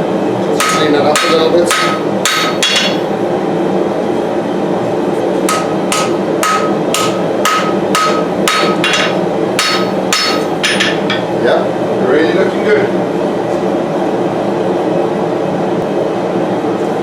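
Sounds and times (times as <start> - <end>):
gas forge roaring: 0.0 - 17.0
hammer striking hot metal: 0.6 - 3.1, 5.5 - 11.4.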